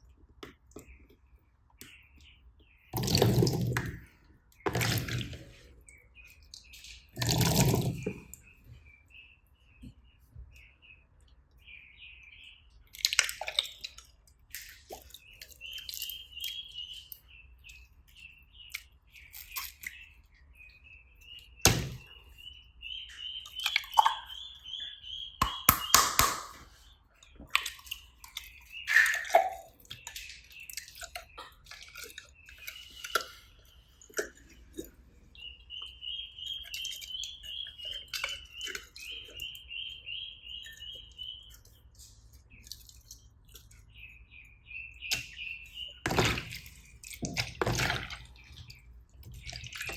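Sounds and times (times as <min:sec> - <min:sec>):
high chirping trills: 0:32.3 - 0:41.9.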